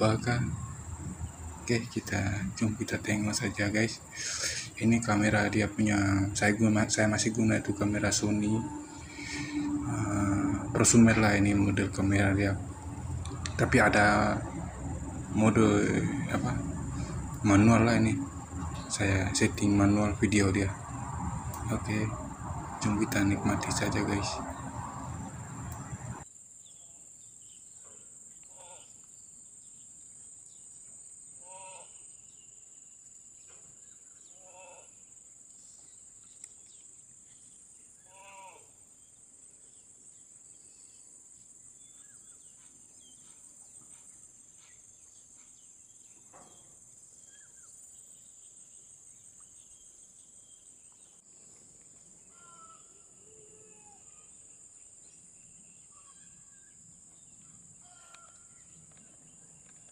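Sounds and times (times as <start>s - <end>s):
high-pitched insect drone: 0.0s - 26.3s
short animal calls: 31.4s - 32.0s, 34.4s - 35.0s, 38.1s - 38.8s.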